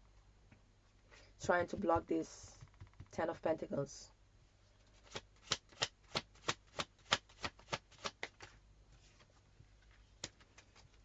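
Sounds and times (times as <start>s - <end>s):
cards being shuffled: 4.9s - 11.0s.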